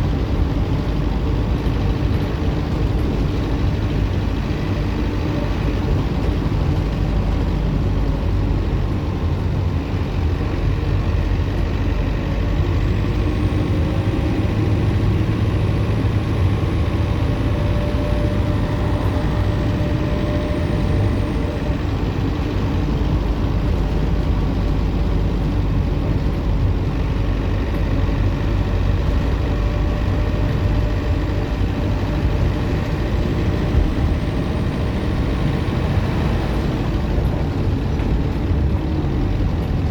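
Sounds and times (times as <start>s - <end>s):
bus diesel engine rumble: 0.0s - 39.9s
turbocharger whine: 9.4s - 39.9s.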